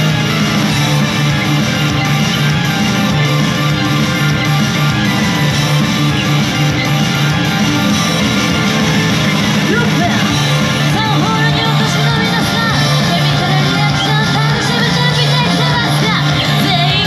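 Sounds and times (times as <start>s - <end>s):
bass line: 0.0s - 17.0s
electric guitar: 0.0s - 17.0s
live rock pop music: 0.0s - 17.0s
person singing: 9.7s - 17.0s.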